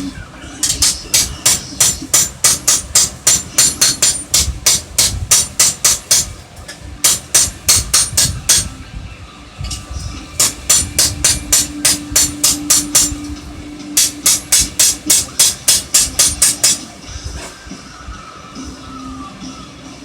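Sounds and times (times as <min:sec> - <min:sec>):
hammer striking metal on anvil: 0:00.6 - 0:08.8, 0:09.7 - 0:16.9.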